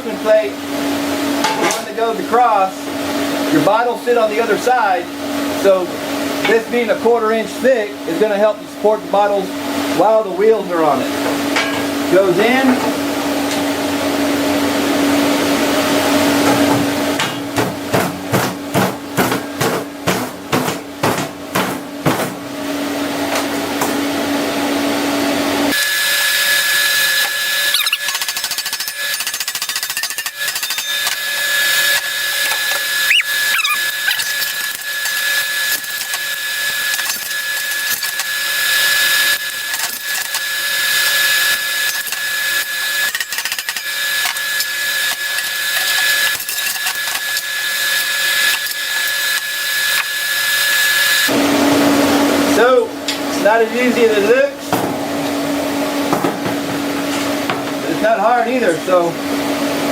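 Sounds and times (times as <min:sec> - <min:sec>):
pulsing metalworking tool hum: 0:26.9 - 0:51.3.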